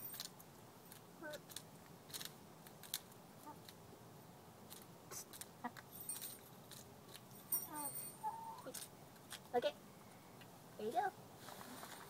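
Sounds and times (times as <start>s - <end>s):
hen calling: 7.7s - 8.8s.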